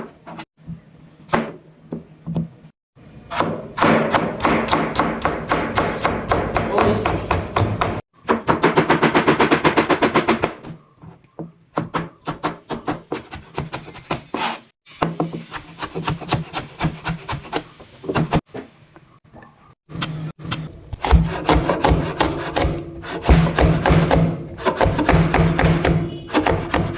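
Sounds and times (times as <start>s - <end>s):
knife chopping on wooden board: 3.4s - 10.7s, 20.9s - 26.9s.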